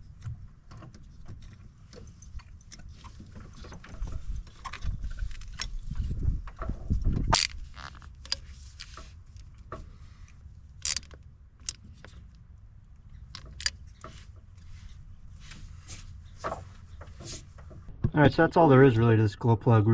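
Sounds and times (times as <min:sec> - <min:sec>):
hand tools clicking and knocking: 0:10.8 - 0:12.4, 0:13.1 - 0:14.2.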